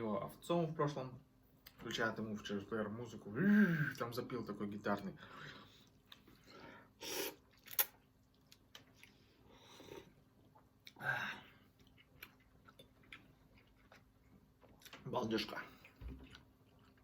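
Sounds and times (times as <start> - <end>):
person chewing food: 7.2 - 15.0, 15.7 - 17.0.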